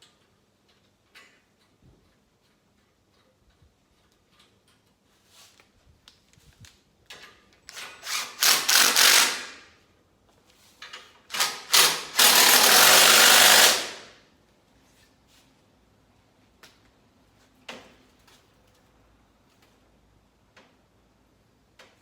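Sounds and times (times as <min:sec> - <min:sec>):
power tool working steel: 0:07.9 - 0:09.6, 0:11.4 - 0:14.1.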